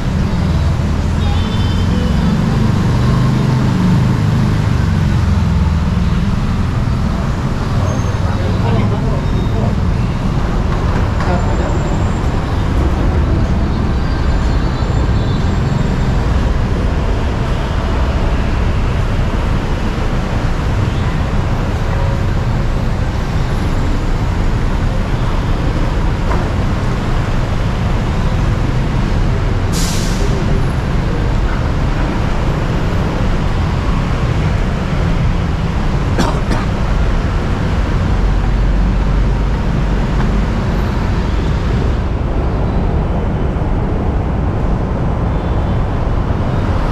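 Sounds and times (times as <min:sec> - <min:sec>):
road traffic: 0:00.0 - 0:46.9
bus air brakes hissing: 0:29.6 - 0:30.6.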